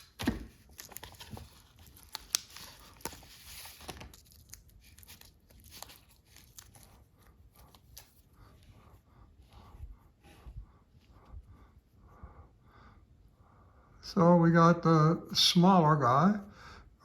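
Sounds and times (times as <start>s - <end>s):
packaging rustling and tearing: 0.0s - 8.3s.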